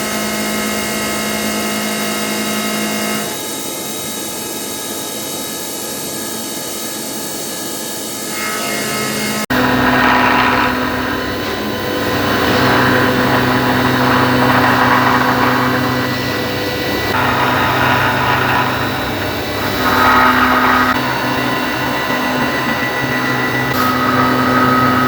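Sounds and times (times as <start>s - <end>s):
milling machine spindle hum: 8.3s - 25.0s
hissing cutting noise: 9.5s - 25.0s.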